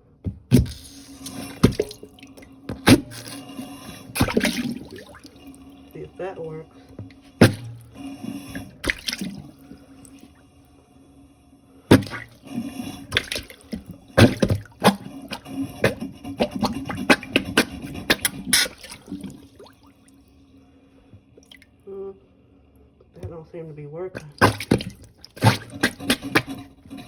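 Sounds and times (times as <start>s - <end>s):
plunger plunging in water: 0.3s - 10.4s, 11.9s - 20.0s, 24.2s - 27.0s.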